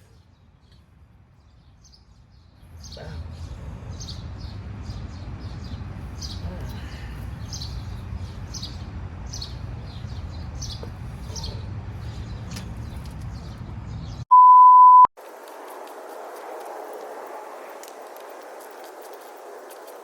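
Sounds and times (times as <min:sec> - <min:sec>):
electronic beep: 0:14.3 - 0:15.1.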